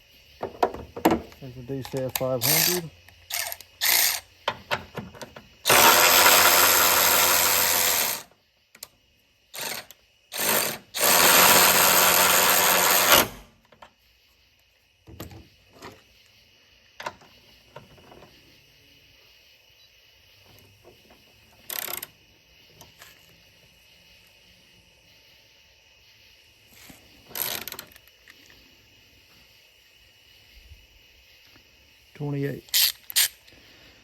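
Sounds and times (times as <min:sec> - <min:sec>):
cordless ratchet running: 0:01.8 - 0:04.2, 0:05.6 - 0:08.3, 0:09.6 - 0:13.4.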